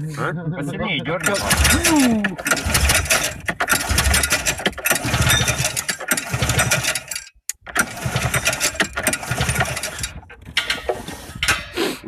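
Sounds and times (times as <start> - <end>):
petrol engine pull-start cranking: 1.1 - 11.8.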